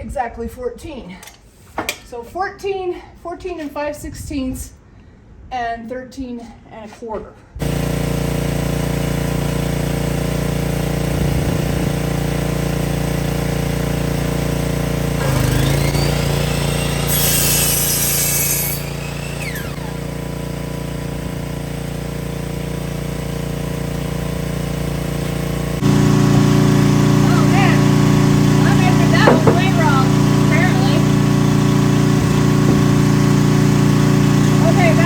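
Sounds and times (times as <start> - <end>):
power saw cutting wood: 7.6 - 35.0.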